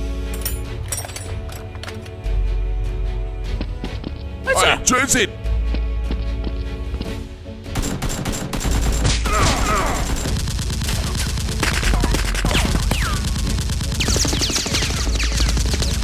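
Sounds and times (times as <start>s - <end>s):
rapid automatic gunfire: 7.8s - 16.0s.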